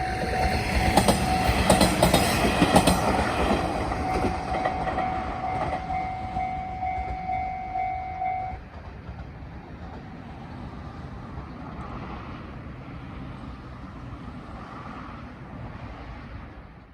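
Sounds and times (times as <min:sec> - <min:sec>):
diesel railcar rumble: 0:00.0 - 0:16.9
level crossing bell ringing: 0:03.9 - 0:08.6.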